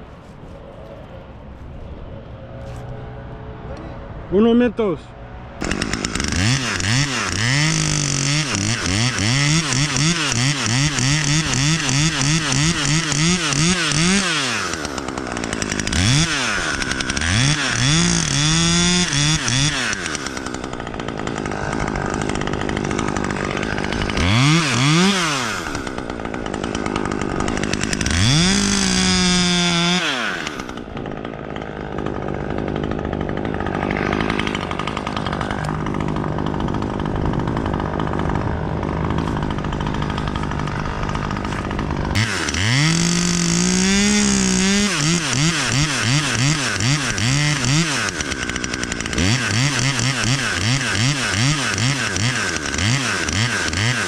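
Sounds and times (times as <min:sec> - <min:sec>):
chainsaw revving: 0:05.4 - 0:54.0.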